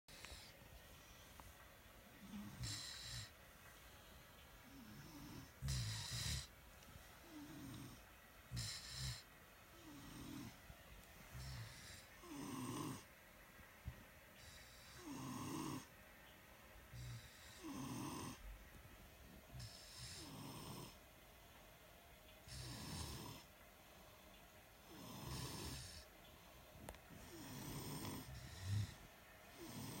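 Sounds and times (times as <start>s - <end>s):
people snoring: 2.2s - 3.3s, 4.6s - 6.5s, 7.2s - 10.6s, 11.3s - 13.1s, 14.4s - 15.9s, 16.9s - 18.5s, 19.6s - 21.0s, 22.4s - 23.5s, 24.8s - 26.0s, 27.1s - 30.0s.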